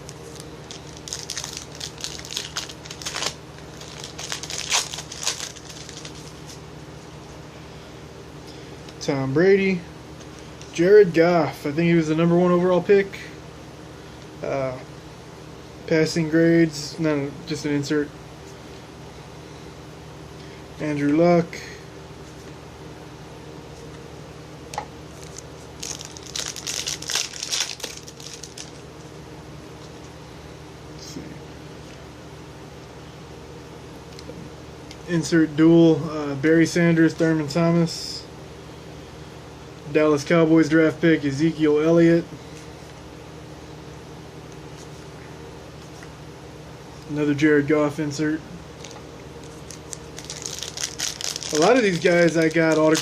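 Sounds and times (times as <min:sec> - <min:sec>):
plastic wrapper crinkling: 0:00.0 - 0:06.6, 0:25.1 - 0:28.8, 0:48.8 - 0:53.0
trading cards rustling: 0:00.0 - 0:06.6, 0:25.1 - 0:28.8, 0:48.8 - 0:53.0.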